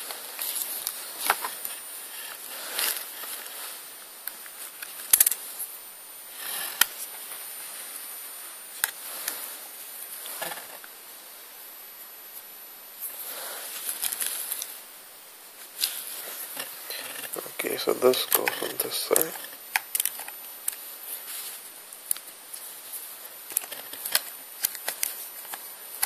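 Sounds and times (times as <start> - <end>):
soft rustling: 20.8 - 21.7.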